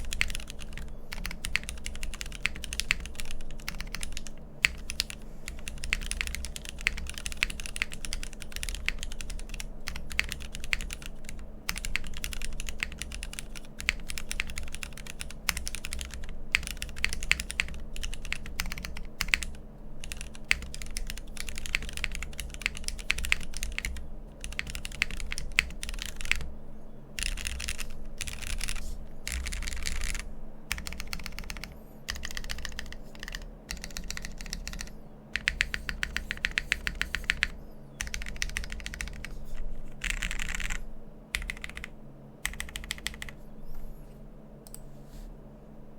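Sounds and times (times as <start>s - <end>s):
mechanical keyboard typing: 0.0s - 26.5s, 27.2s - 40.8s, 41.4s - 43.4s.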